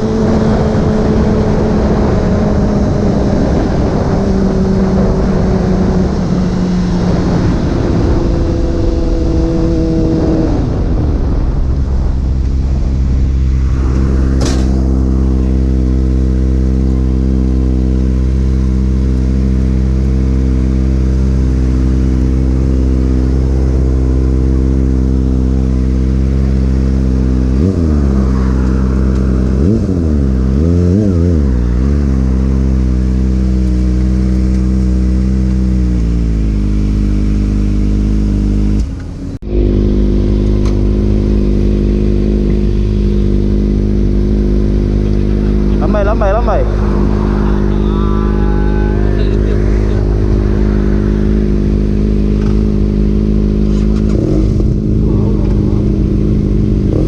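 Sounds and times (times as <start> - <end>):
wind noise: 0.0 - 18.3, 44.2 - 57.0
motorcycle engine running: 0.0 - 57.0.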